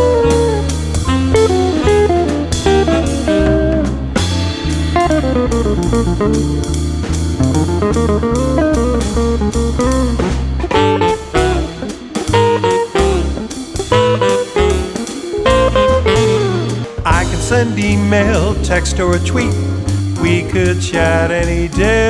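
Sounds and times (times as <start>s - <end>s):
bluesy rock guitar solo: 0.0s - 20.6s.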